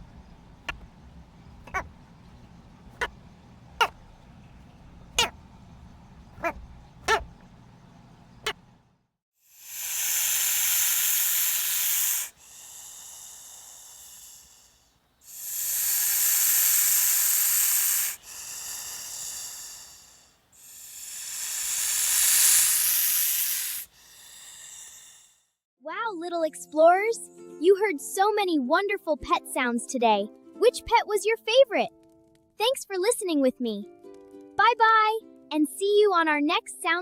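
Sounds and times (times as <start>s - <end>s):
animal hissing: 1.7s - 1.9s, 5.1s - 5.4s, 6.4s - 7.3s, 9.5s - 25.4s.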